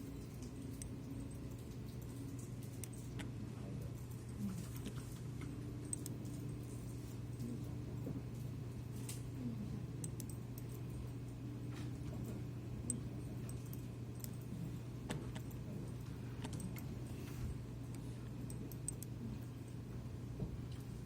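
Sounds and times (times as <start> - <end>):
low electrical hum: 0.0 - 21.0
keyboard and mouse clicks: 5.9 - 6.4, 16.4 - 16.9, 17.9 - 19.1.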